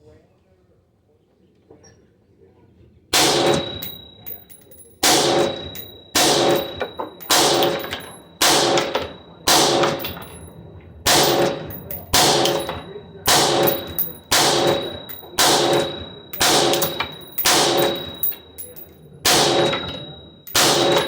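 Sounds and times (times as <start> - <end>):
rifle shots with metallic ringing: 3.2 - 21.0.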